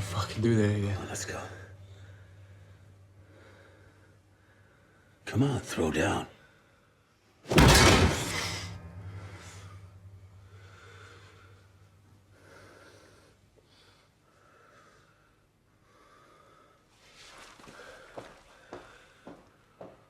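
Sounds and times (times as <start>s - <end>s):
low hum: 0.0s - 5.3s, 7.5s - 12.9s
loud thud: 7.5s - 11.6s.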